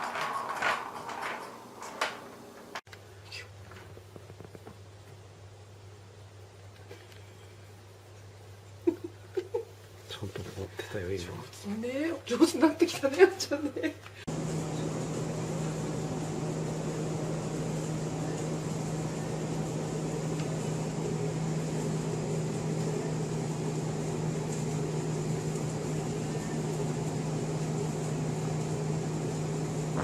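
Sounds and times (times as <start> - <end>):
mechanical hum with hiss: 0.0 - 30.0.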